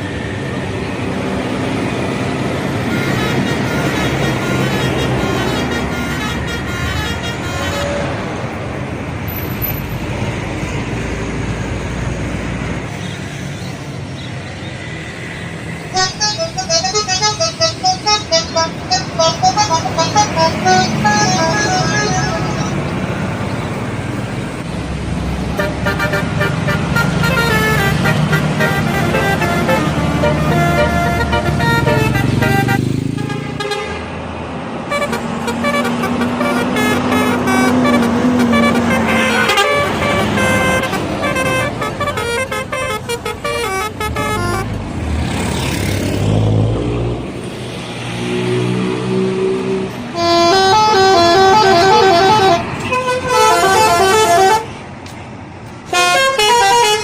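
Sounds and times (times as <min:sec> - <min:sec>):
bus engines running: 0:00.0 - 0:57.0
bus air horns playing tunes: 0:02.7 - 0:08.4, 0:15.9 - 0:23.3, 0:25.5 - 0:34.1, 0:34.9 - 0:44.8, 0:50.1 - 0:54.8, 0:55.8 - 0:57.0.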